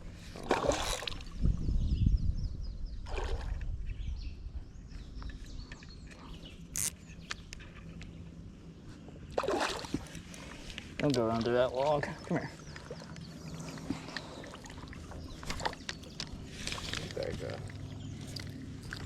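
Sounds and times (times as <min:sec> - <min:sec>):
water splashing and trickling: 0:00.1 - 0:01.6, 0:03.0 - 0:03.9, 0:09.2 - 0:19.0.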